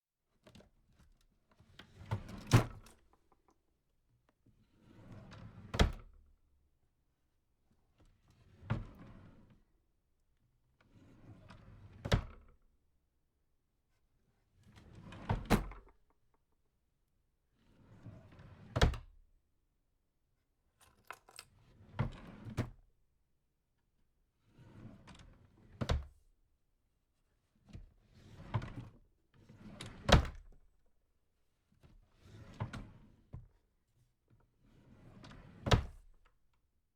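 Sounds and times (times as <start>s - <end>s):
drawer sliding open and shut: 1.9s - 3.1s, 8.4s - 9.6s, 11.1s - 12.5s, 14.8s - 15.9s, 17.9s - 19.1s, 20.8s - 22.8s, 24.6s - 26.2s, 28.2s - 30.6s, 32.2s - 33.2s, 34.7s - 36.2s
drawer sliding and knocking shut: 2.0s - 2.9s, 15.0s - 15.9s, 29.6s - 30.5s, 35.4s - 36.1s.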